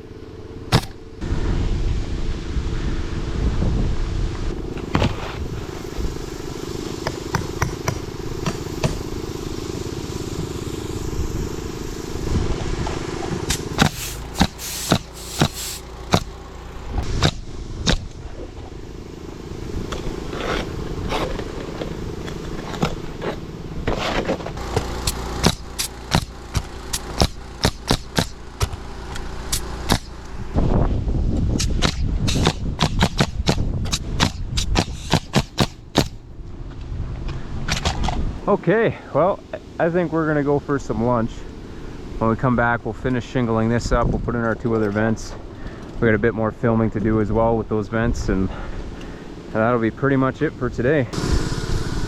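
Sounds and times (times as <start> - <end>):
steady low drone: 0.0 - 32.8, 39.2 - 52.0
nailer firing nails: 0.7 - 1.0, 7.0 - 9.2, 13.4 - 16.4, 23.9 - 30.2, 31.6 - 36.2.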